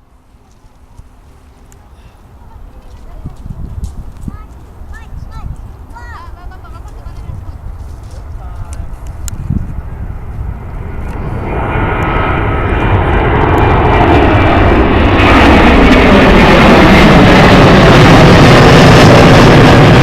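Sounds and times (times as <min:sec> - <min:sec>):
jet airliner engines: 0:00.0 - 0:20.0.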